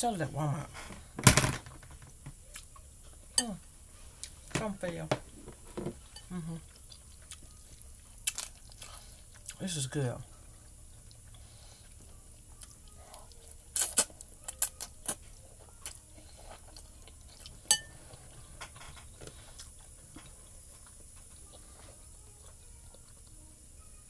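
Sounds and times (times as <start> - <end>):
faint eating sounds: 0.0 - 24.0
utensil clinking against bowl: 17.7 - 19.1.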